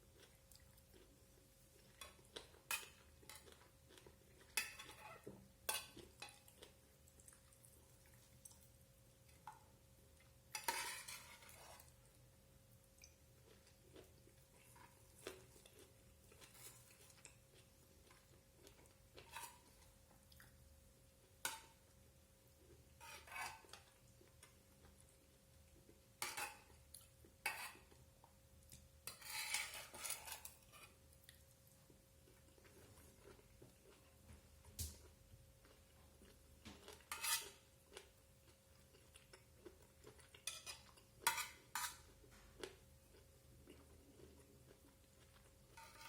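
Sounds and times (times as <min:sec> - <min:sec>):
spoon clinking and scraping plate: 0:10.6 - 0:11.9, 0:29.0 - 0:31.0, 0:37.1 - 0:37.6, 0:40.4 - 0:42.1.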